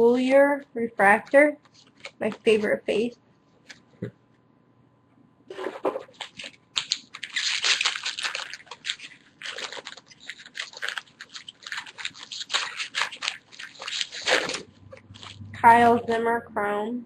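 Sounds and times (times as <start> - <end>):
wrapper and cards crinkling: 1.2 - 2.8, 5.5 - 15.6.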